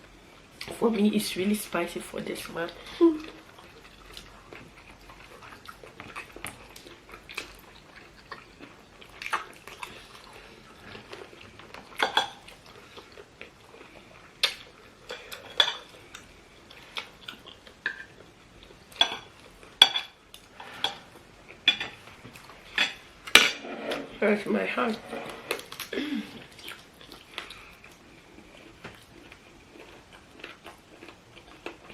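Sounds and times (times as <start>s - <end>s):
cutlery clinking on plates: 19.0s - 21.1s.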